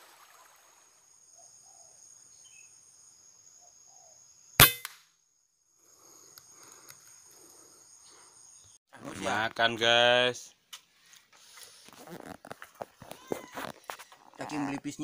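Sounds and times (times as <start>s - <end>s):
insects droning: 0.0s - 15.0s
loud sharp crack: 4.6s - 5.0s.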